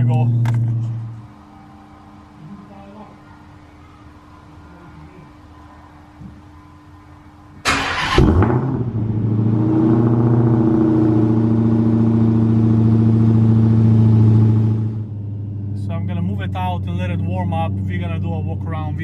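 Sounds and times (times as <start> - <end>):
car engine starting and idling: 7.6 - 19.0.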